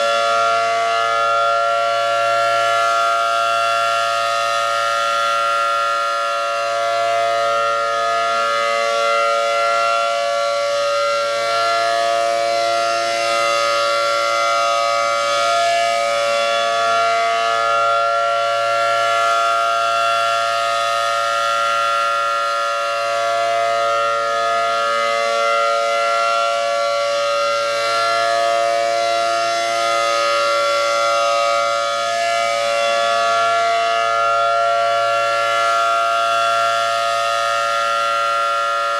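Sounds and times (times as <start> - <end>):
warning siren steady chord: 0.0 - 38.9.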